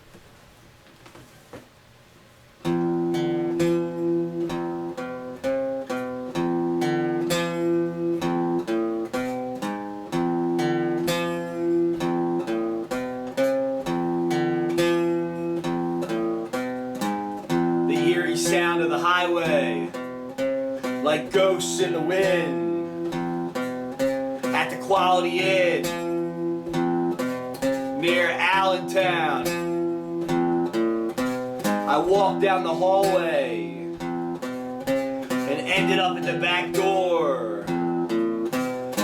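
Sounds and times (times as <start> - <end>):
acoustic guitar chords: 2.6 - 39.0
person singing: 17.9 - 20.0, 21.0 - 22.9, 24.4 - 26.2, 28.0 - 29.7, 31.9 - 34.1, 35.3 - 37.9.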